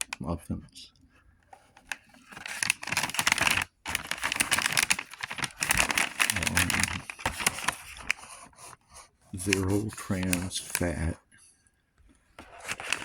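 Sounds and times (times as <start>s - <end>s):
plastic pouch crinkling: 1.8s - 8.3s, 9.4s - 11.0s, 12.4s - 13.0s.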